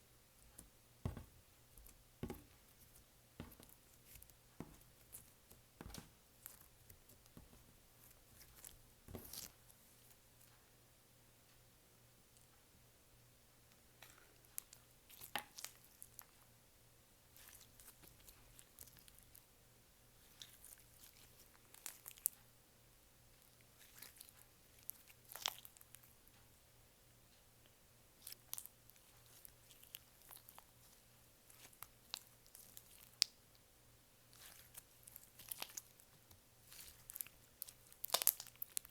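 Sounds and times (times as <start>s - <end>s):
slime sticky clicks: 36.8s - 38.9s.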